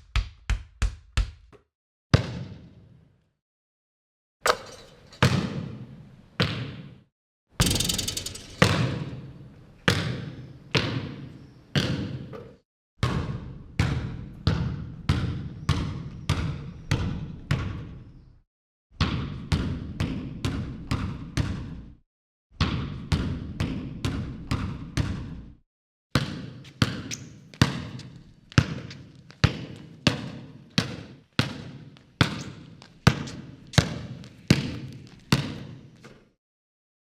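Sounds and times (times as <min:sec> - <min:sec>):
basketball bouncing on hard floor: 0:07.6 - 0:08.9, 0:28.6 - 0:36.2.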